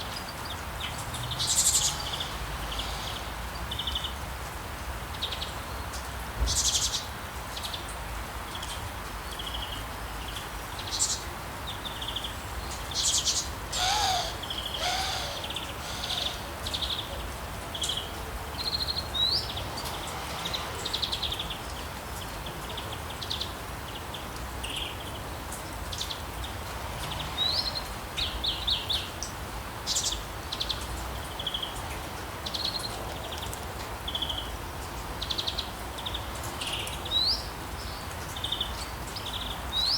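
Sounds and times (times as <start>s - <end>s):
steady rain: 0.0s - 39.9s
birds chirping and trilling: 13.1s - 17.1s
low wavering bird call: 13.7s - 17.0s
rising bird whistles: 13.8s - 16.5s.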